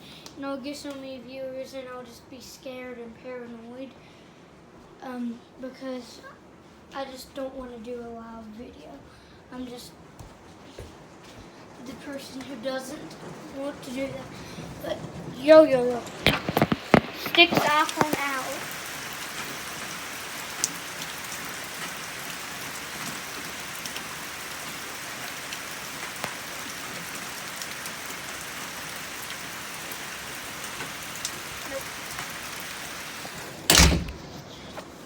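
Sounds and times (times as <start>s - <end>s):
heavy rain pouring: 11.6s - 35.0s
drops ticking: 16.0s - 19.4s
loud thump: 33.7s - 34.3s.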